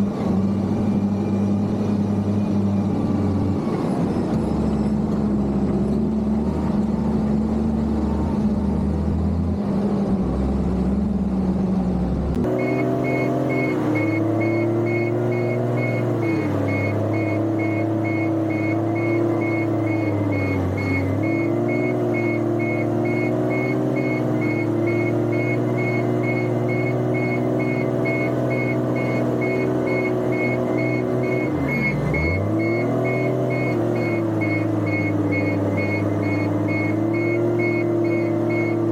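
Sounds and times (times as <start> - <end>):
diesel engine under load: 0.0 - 38.9
high rapidly pulsing tone: 12.6 - 38.8.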